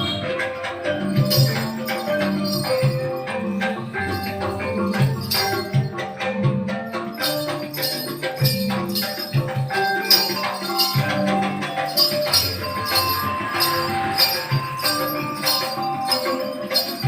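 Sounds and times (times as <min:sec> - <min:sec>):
ringing metallophone tones: 0:00.0 - 0:17.0
small bells jingling: 0:00.0 - 0:17.0.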